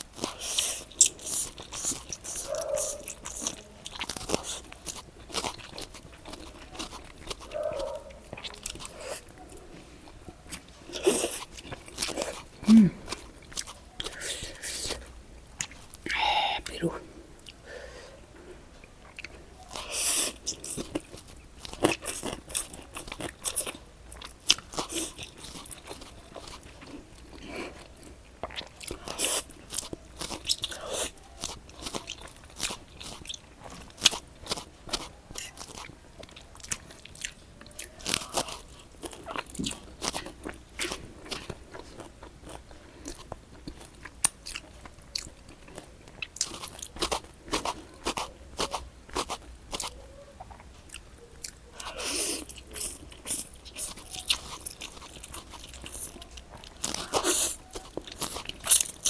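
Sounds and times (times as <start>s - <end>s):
crunchy food chewing: 0.0s - 18.2s, 18.8s - 59.0s.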